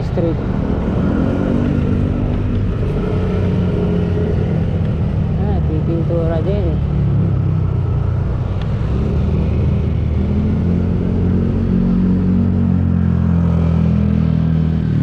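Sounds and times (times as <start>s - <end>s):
vehicle engine rumbling: 0.0s - 15.0s.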